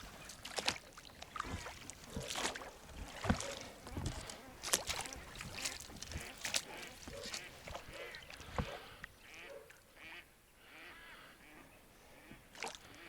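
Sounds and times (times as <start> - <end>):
ducks quacking: 3.2 - 13.0.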